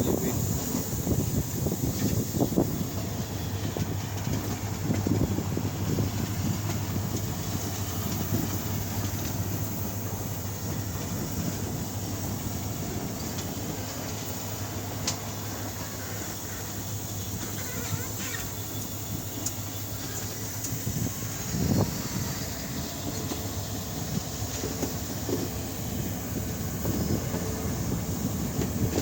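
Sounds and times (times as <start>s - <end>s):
click: 15.0s - 15.2s.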